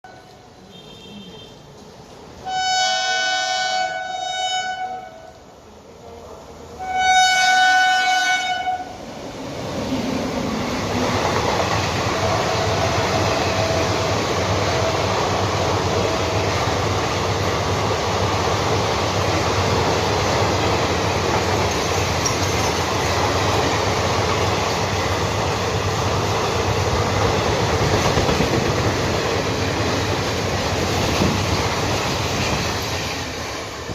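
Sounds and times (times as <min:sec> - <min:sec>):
locomotive horn blasts: 0:02.4 - 0:05.4, 0:06.8 - 0:09.0
train wheels rumbling on rails: 0:07.4 - 0:33.9.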